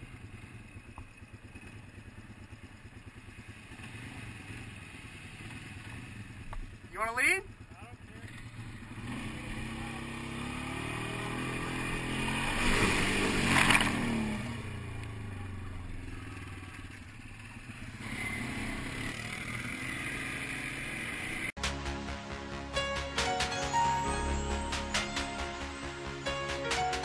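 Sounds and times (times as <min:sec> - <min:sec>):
quad bike engine revving: 0:03.1 - 0:21.6.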